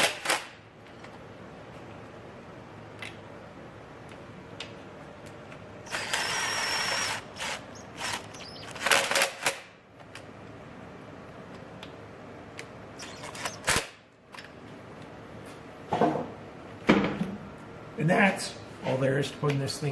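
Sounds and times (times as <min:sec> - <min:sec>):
power driver whining: 0:05.8 - 0:09.2, 0:13.0 - 0:13.8.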